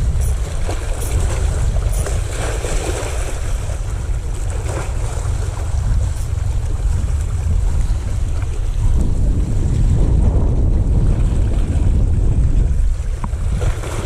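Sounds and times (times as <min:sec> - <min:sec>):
sea water washing and splashing: 0:00.0 - 0:14.0
wind buffeting microphone: 0:00.0 - 0:14.0.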